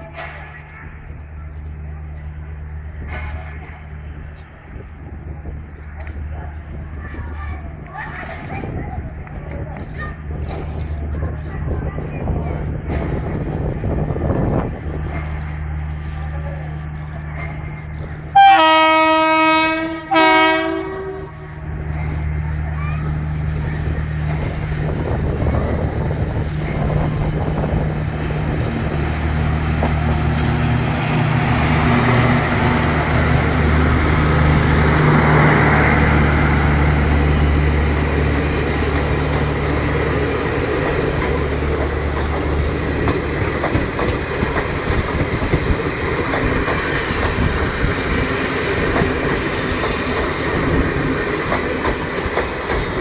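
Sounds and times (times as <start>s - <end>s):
train wheels clattering over rail joints: 37.7s - 53.0s.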